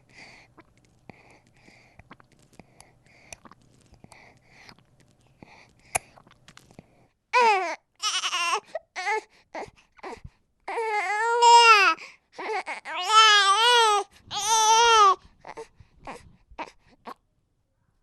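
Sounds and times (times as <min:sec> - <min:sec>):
baby crying: 0:07.3 - 0:09.3, 0:10.0 - 0:16.8.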